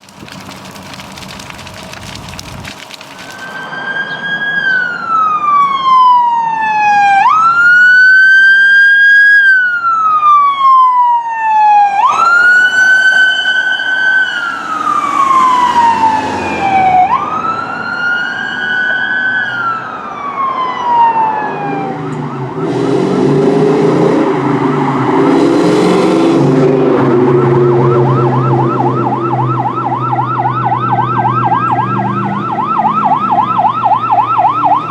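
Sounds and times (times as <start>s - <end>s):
siren wailing: 3.3s - 34.9s
fast yelp siren: 3.4s - 23.6s, 27.2s - 34.9s
low blaring air horns: 11.8s - 17.5s
engine noise: 11.8s - 18.1s.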